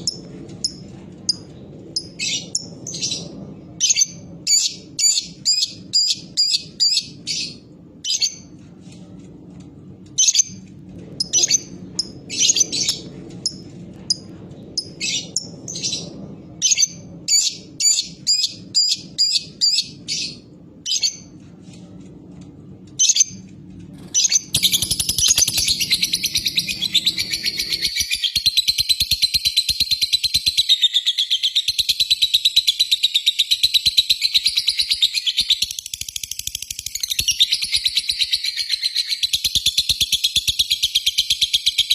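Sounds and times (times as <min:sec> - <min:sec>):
lovebird chirping: 0:24.2 - 0:33.3.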